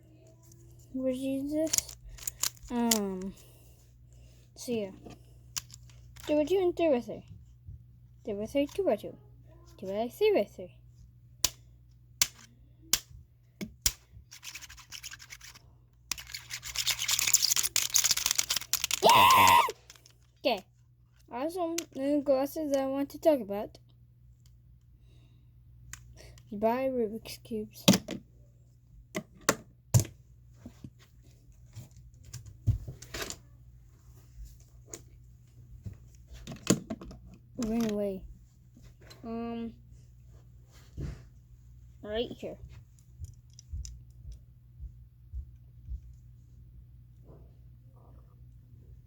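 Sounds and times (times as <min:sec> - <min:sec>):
faint hum: 0:00.0 - 0:36.4
puzzle cube clicking and rattling: 0:01.5 - 0:03.3, 0:14.3 - 0:20.5.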